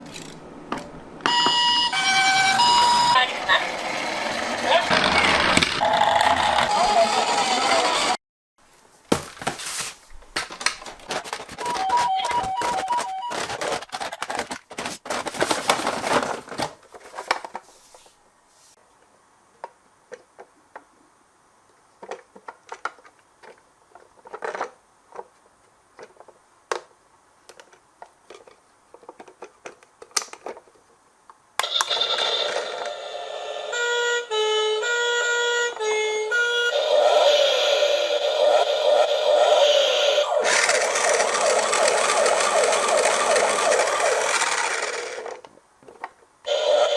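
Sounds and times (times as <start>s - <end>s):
toy cars rattling on plastic track: 3.5s - 8.2s, 40.4s - 45.4s.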